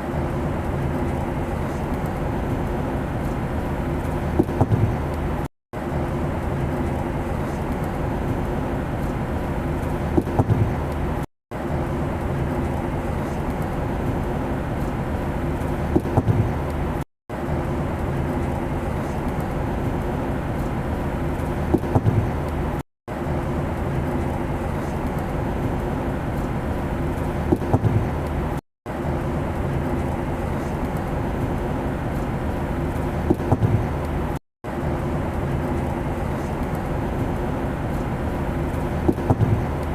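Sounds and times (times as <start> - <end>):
airplane engine drone: 0.0 - 39.9.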